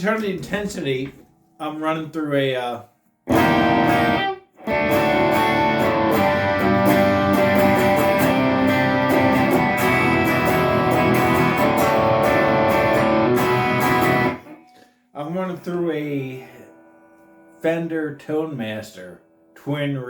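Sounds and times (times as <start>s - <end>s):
electric guitar chords: 3.3s - 14.8s.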